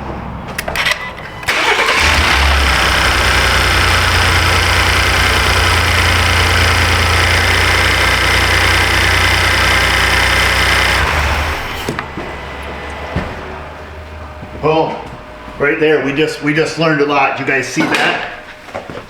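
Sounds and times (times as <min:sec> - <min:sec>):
truck engine idling: 0:01.4 - 0:14.4.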